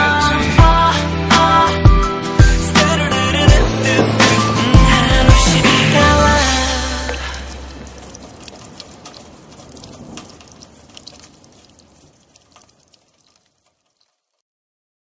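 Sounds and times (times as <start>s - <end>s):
rain with raindrop patters: 6.5s - 14.4s.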